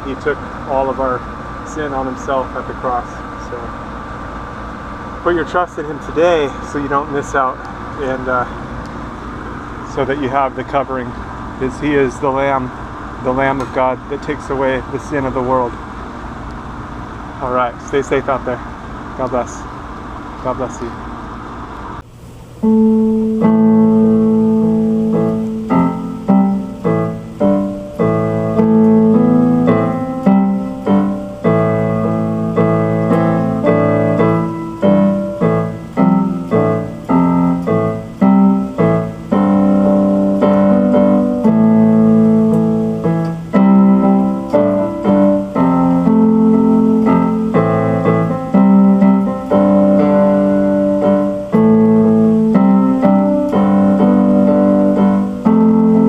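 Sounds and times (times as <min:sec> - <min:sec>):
piano music: 0:22.6 - 0:56.0.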